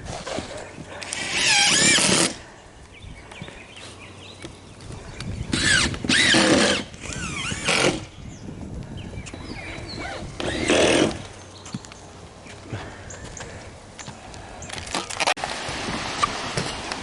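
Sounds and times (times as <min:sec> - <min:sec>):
power drill driving screws: 0:01.2 - 0:02.4, 0:05.5 - 0:08.1.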